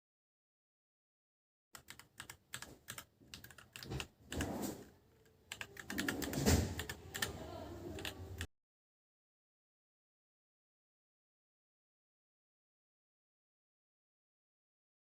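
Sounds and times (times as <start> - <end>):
mechanical keyboard typing: 1.8 - 8.5.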